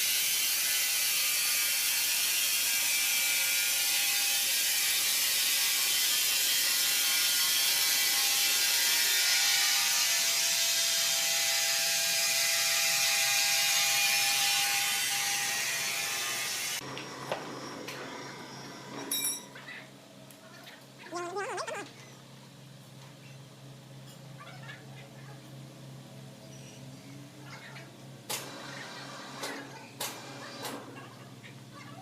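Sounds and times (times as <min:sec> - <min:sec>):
mill saw cutting through log: 0:00.0 - 0:16.8.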